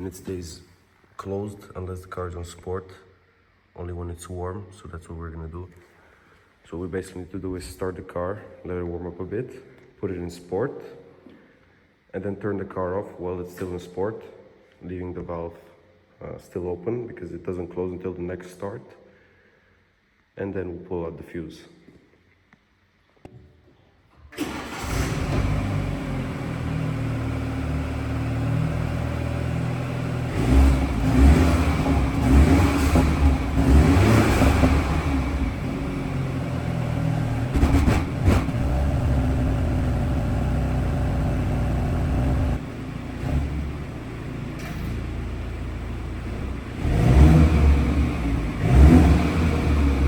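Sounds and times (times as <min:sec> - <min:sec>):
car engine starting: 0:24.3 - 0:50.0
car engine revving: 0:24.4 - 0:44.5, 0:45.1 - 0:50.0.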